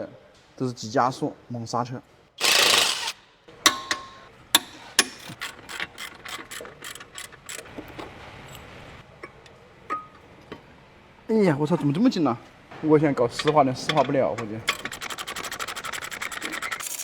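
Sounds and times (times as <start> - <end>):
ratchet wrench clicking: 2.4 - 4.0, 4.6 - 8.6, 13.4 - 17.0.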